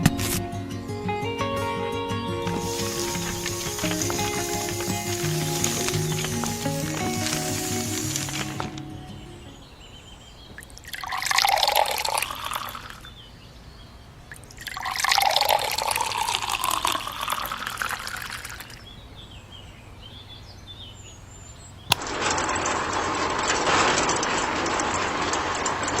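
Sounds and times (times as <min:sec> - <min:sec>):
water pouring: 0:02.5 - 0:08.8, 0:10.6 - 0:13.1, 0:14.3 - 0:18.8
steady hiss: 0:02.5 - 0:09.8.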